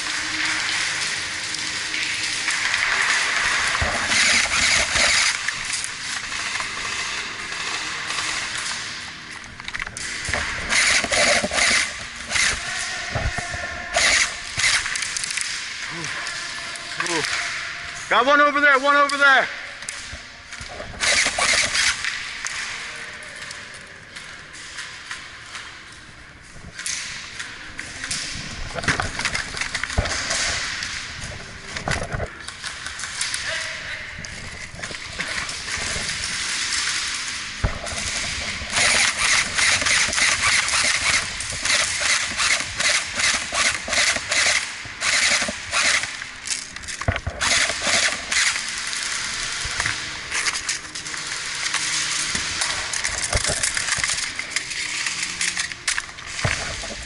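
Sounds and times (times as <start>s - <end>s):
airsoft guns firing: 36.9s - 46.6s.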